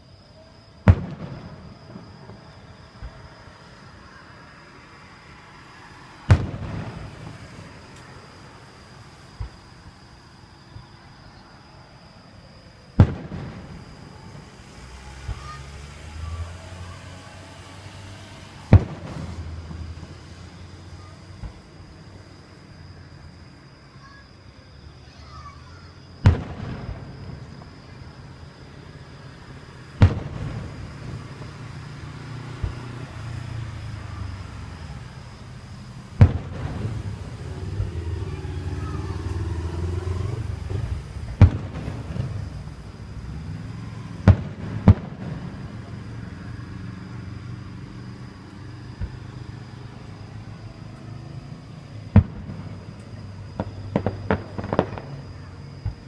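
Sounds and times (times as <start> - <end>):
firework shells bursting: 35.8 - 43.4, 52.2 - 55.2.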